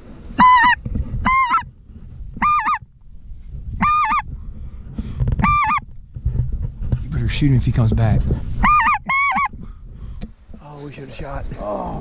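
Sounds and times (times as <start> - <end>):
goose calls: 0.4 - 1.7, 2.4 - 2.8, 3.8 - 4.3, 5.4 - 5.8, 8.6 - 9.5.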